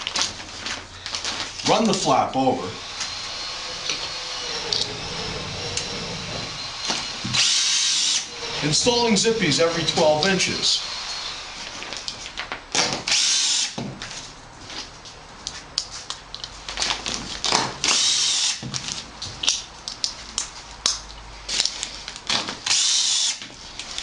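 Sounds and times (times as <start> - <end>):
power drill driving screws: 1.2 - 13.8, 17.8 - 18.7, 22.6 - 23.5.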